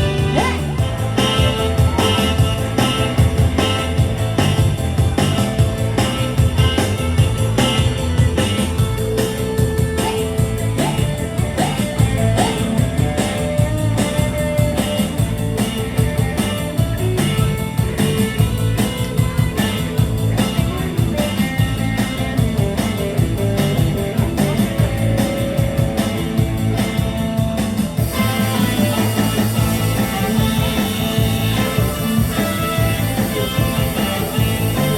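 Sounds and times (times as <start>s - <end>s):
live band playing fast beat: 0.0s - 34.9s.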